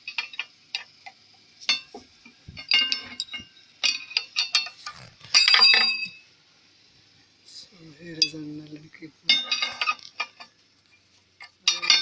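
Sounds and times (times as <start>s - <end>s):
tools clinking on steel: 1.7s - 2.0s, 2.6s - 4.8s, 5.4s - 6.2s, 9.3s - 10.6s, 11.4s - 12.0s.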